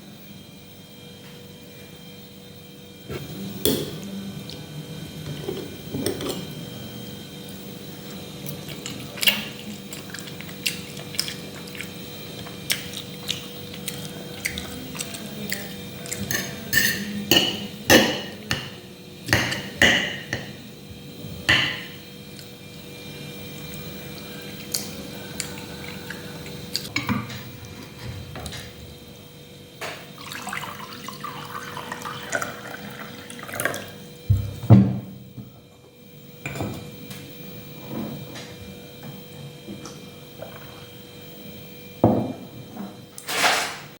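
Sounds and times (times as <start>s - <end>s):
dishes and utensils clinking: 15.6s - 20.6s.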